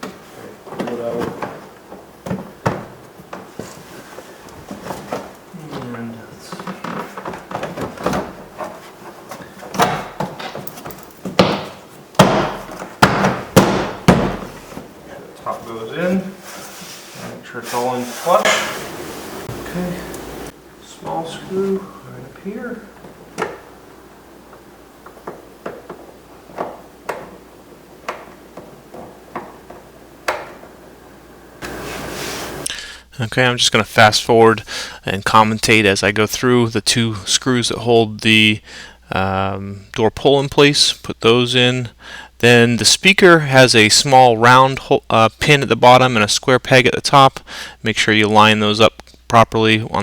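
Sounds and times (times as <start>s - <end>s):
door panel knocked into place: 11.3s - 14.6s.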